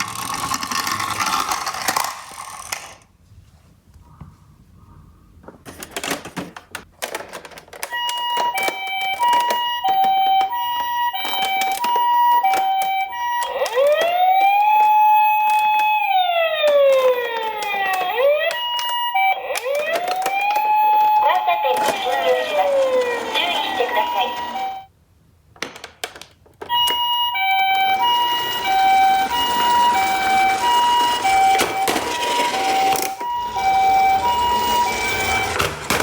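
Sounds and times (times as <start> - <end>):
toy clicks and rattles: 0.0 - 3.0
toy electronic siren: 7.8 - 24.9, 26.7 - 36.0.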